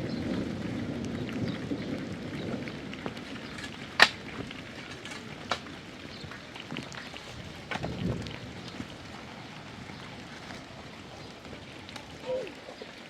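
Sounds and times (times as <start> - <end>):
rain falling: 0.0 - 13.0.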